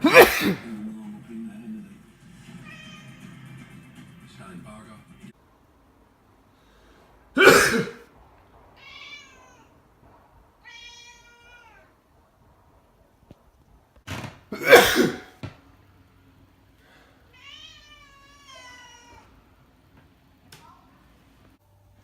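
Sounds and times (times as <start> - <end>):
person sneezing loudly: 0.0 - 0.7, 7.4 - 8.1, 14.5 - 15.4
cat meowing: 2.5 - 3.4, 8.7 - 9.8, 10.6 - 12.0, 17.3 - 19.4.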